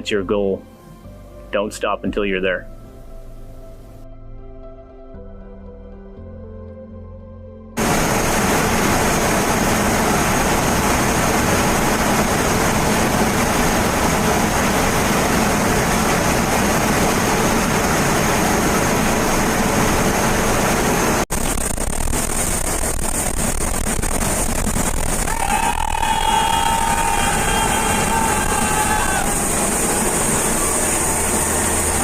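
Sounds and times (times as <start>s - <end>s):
aircraft engine: 7.8s - 32.0s
rushing wind noise: 7.8s - 32.0s
thin high whine: 7.8s - 32.0s.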